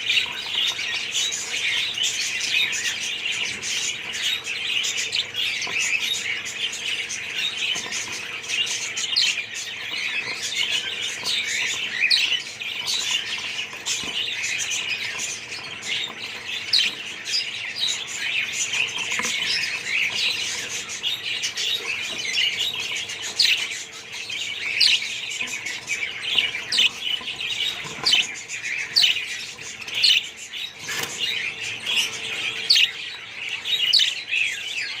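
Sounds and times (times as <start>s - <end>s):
budgerigars chattering and chirping: 0.0s - 35.0s.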